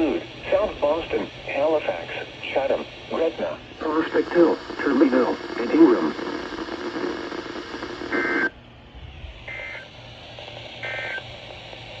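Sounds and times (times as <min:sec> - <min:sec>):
radio hiss: 0:00.0 - 0:12.0.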